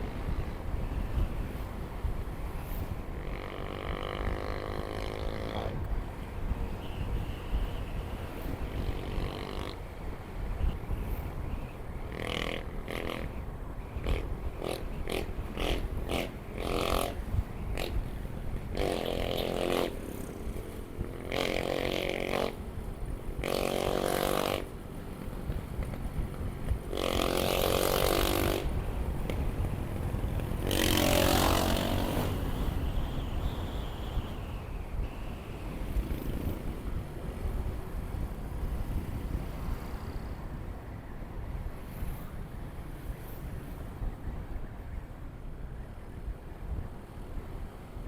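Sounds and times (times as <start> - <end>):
wind on microphone: 0.0 - 48.0
motorcycle engine running: 14.0 - 34.0.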